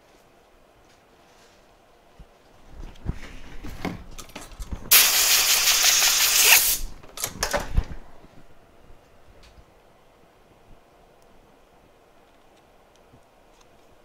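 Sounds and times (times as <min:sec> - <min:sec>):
spray can hissing: 0:04.9 - 0:06.9.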